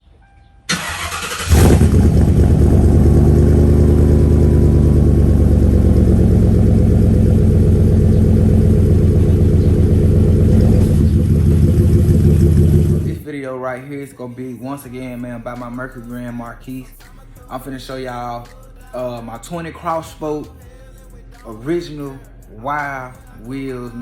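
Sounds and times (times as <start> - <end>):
car engine starting and idling: 0.7 - 13.2.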